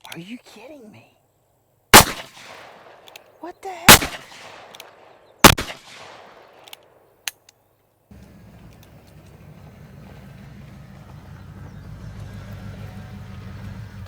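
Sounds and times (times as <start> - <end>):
gunshot with echo: 2.0 - 3.0, 3.9 - 6.5
light clicks: 3.0 - 3.4, 4.6 - 5.0
low rumble: 8.1 - 14.0.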